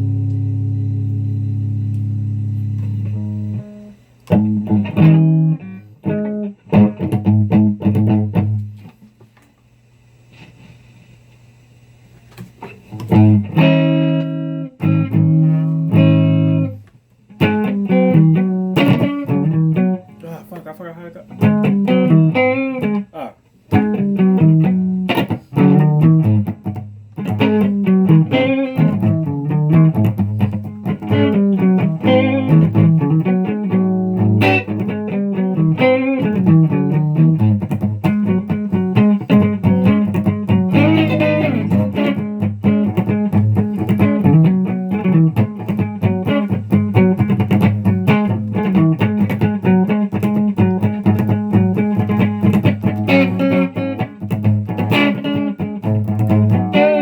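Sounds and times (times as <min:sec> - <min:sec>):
bass line: 0:00.0 - 0:03.8
plucked electric guitar: 0:00.0 - 0:09.0, 0:12.4 - 0:57.0.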